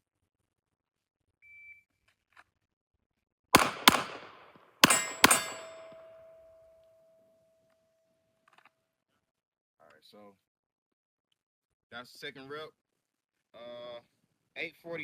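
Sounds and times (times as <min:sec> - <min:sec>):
pistol shots: 0:03.6 - 0:06.4
steel target ringing: 0:03.6 - 0:06.8.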